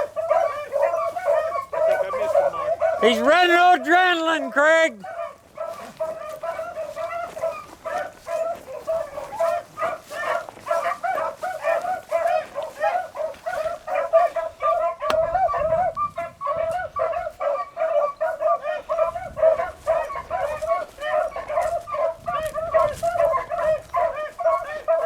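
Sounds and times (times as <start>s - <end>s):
dogs baying: 0.0s - 3.9s, 4.9s - 25.0s
sharp crack: 15.0s - 15.4s.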